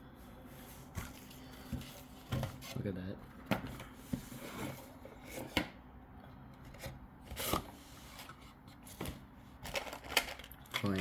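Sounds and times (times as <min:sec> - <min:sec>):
packaging rustle: 0:09.6 - 0:11.0.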